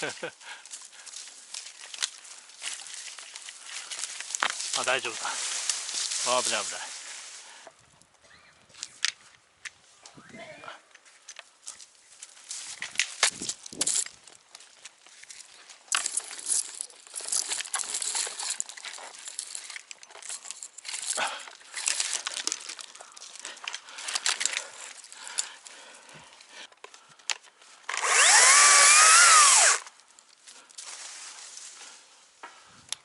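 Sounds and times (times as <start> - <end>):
branches crackling and scraping: 0.0 - 10.0, 10.9 - 32.5
chainsaw running: 27.9 - 29.9.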